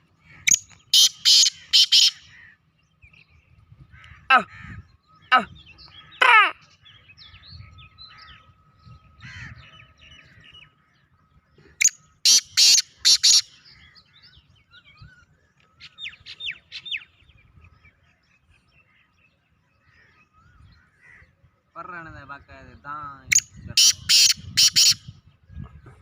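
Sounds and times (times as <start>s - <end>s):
small birds chirping and twittering: 0.0s - 26.0s
francolin harsh grating call: 0.4s - 2.5s, 12.3s - 13.5s, 23.8s - 25.0s.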